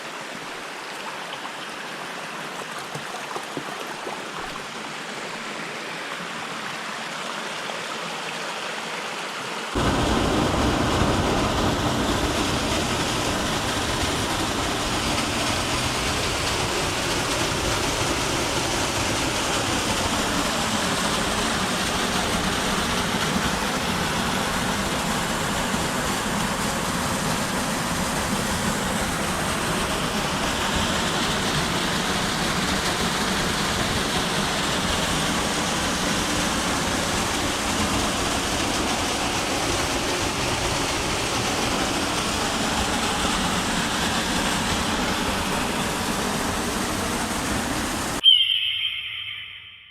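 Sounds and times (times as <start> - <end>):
waterfall rushing water: 0.0 - 48.2
deep rumble: 9.8 - 15.1.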